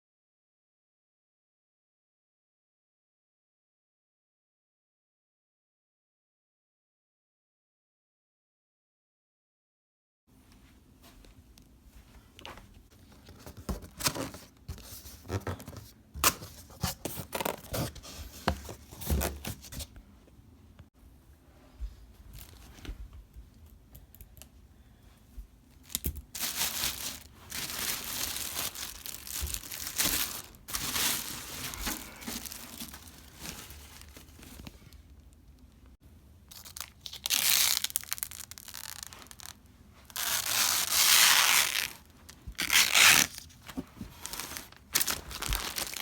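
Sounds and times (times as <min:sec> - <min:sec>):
packaging tearing and rustling: 0:13.3 - 0:19.9, 0:25.9 - 0:34.9, 0:36.5 - 0:46.0.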